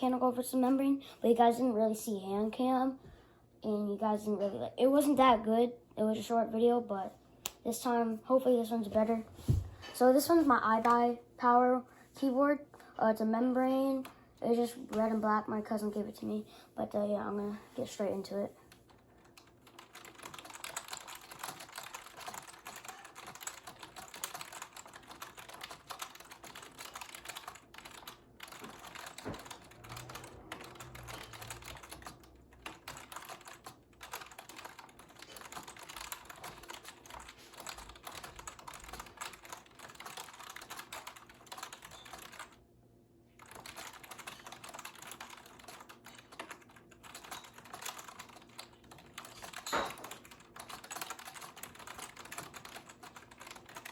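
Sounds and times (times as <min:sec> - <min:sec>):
fast typing on keyboard: 0:19.2 - 0:42.6, 0:43.4 - 0:53.9.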